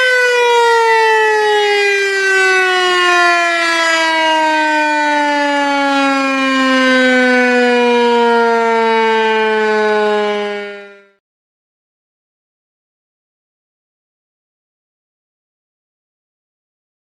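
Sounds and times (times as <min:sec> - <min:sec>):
warning siren winding down: 0:00.0 - 0:11.2.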